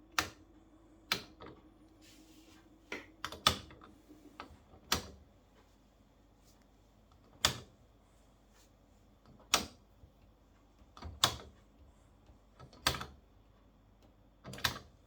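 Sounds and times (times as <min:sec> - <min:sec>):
washing machine sharp clicks: 0:00.0 - 0:00.5, 0:01.1 - 0:01.6, 0:02.9 - 0:03.8, 0:04.4 - 0:05.3, 0:07.2 - 0:07.8, 0:09.3 - 0:09.9, 0:11.0 - 0:11.6.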